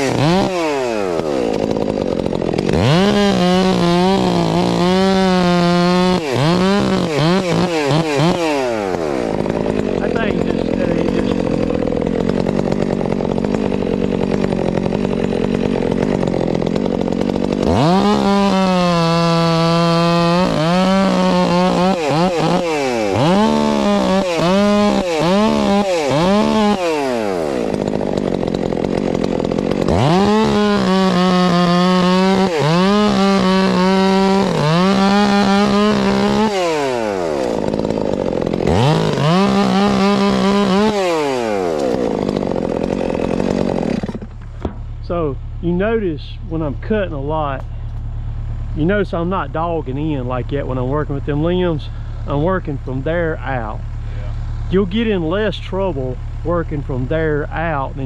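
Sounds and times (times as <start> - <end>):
chainsaw revving: 0.0 - 58.0.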